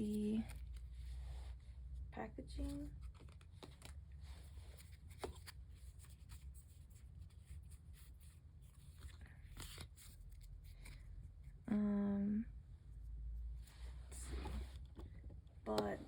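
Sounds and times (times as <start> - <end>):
rustling of wrappers and cards: 0.0 - 11.6.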